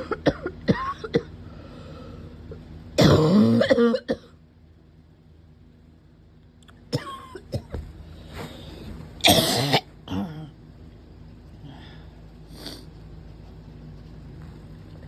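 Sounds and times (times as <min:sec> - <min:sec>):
person barking cough: 0:03.0 - 0:04.3, 0:09.2 - 0:10.4.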